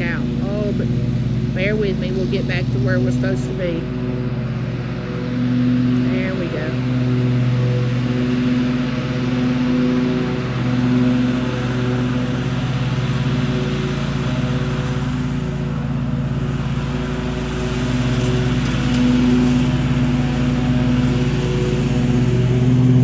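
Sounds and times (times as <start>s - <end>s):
lawn mower engine: 0.0s - 23.0s.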